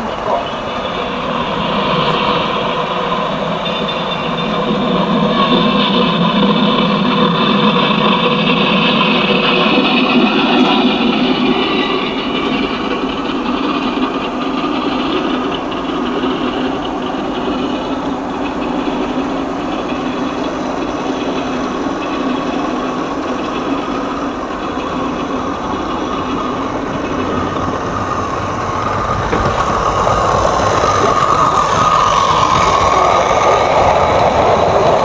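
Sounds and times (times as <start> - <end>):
locomotive running: 0.0 - 35.0.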